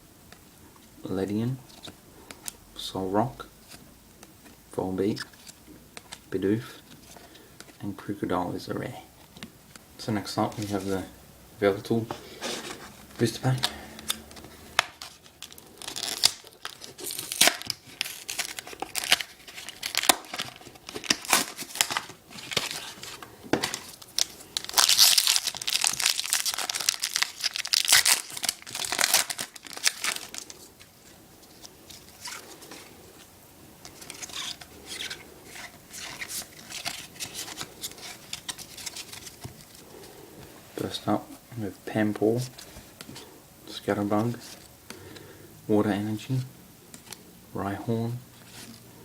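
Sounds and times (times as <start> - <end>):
foil wrapper tearing and crinkling: 13.5 - 30.9, 33.8 - 39.9.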